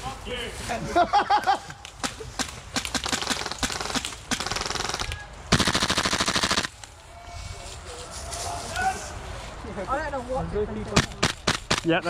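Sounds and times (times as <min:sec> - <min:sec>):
airsoft rifle fire: 0:02.4 - 0:06.8, 0:11.0 - 0:12.0.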